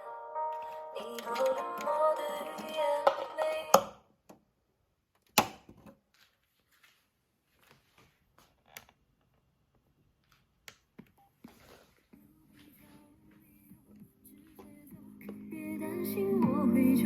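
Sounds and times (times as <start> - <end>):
music: 0.0 - 3.8, 12.7 - 17.0.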